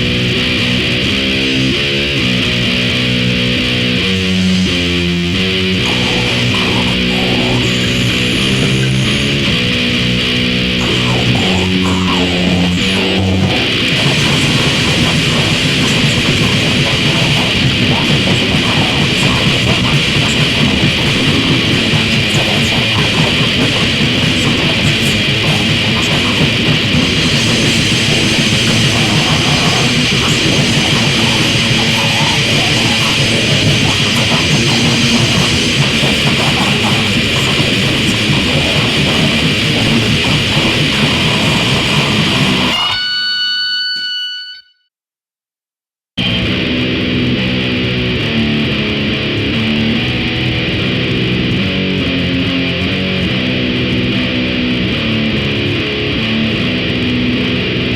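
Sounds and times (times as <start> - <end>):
distorted grind music: 0.0 - 43.0, 46.2 - 57.9
high ringing tone: 41.7 - 44.9.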